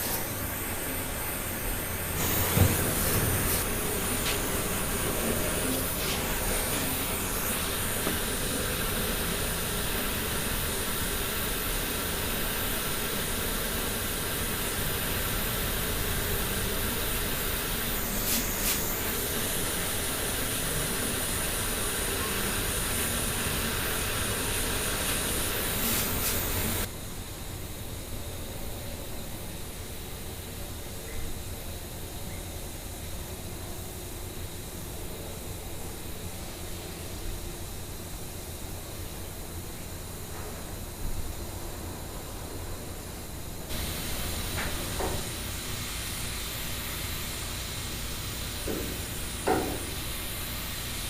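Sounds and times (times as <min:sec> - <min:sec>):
torch flame hissing: 0:00.0 - 0:26.9, 0:43.7 - 0:51.0.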